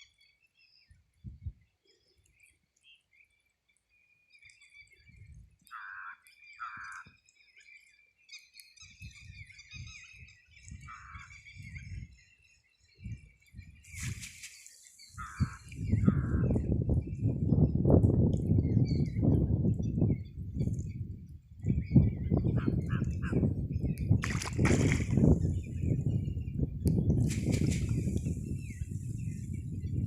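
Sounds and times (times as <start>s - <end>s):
birds chirping and calling: 4.4s - 30.0s
low thuds and rustles: 27.1s - 29.2s.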